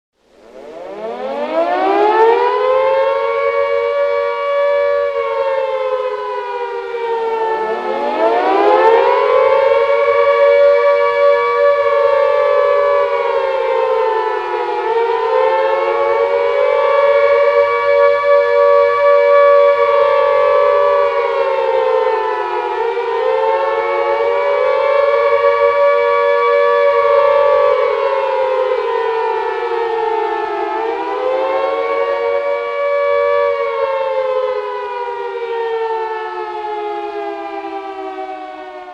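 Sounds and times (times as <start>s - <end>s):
air raid siren wailing: 0.2s - 38.9s.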